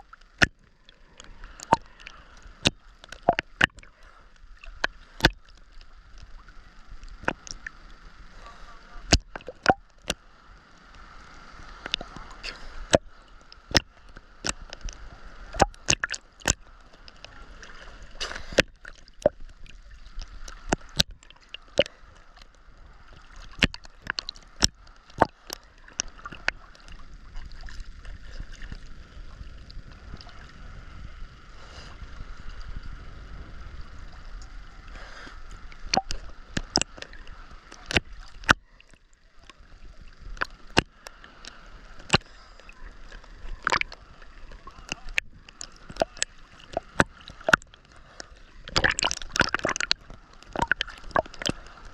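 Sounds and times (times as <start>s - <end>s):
sharp water splashes: 0.0s - 3.9s, 11.8s - 22.5s, 23.1s - 27.0s, 35.8s - 39.0s, 40.4s - 51.9s
seawater sloshing and gurgling: 0.0s - 10.3s, 11.2s - 51.9s.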